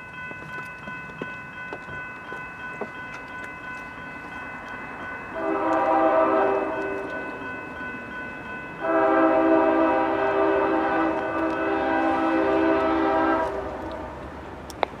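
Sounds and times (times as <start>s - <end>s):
locomotive air horn blasts: 5.4s - 7.2s, 8.8s - 14.1s.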